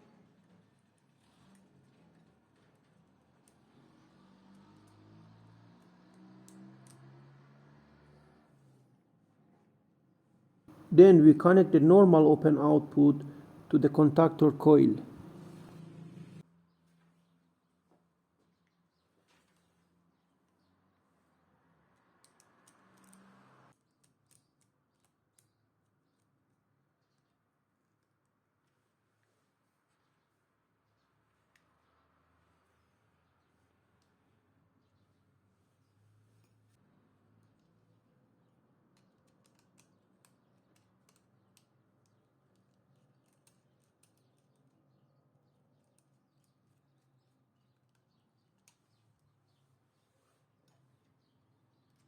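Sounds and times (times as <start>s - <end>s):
faint small clicks: 4.5s - 5.2s, 5.8s - 7.2s, 22.0s - 26.3s, 38.9s - 44.8s, 45.4s - 49.6s.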